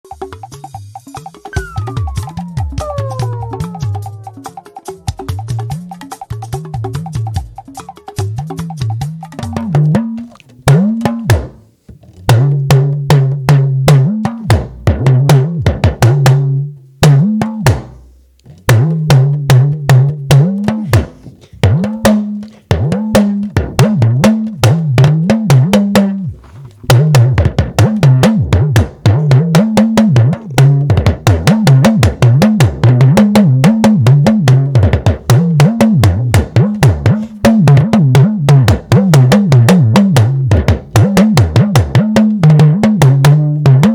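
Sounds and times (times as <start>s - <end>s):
talking drum strokes: 9.3s - 11.7s, 18.7s - 43.9s.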